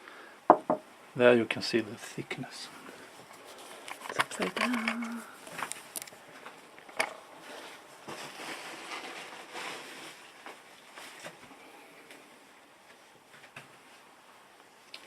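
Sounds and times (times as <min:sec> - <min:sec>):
plastic packaging rustling: 0:03.0 - 0:11.4.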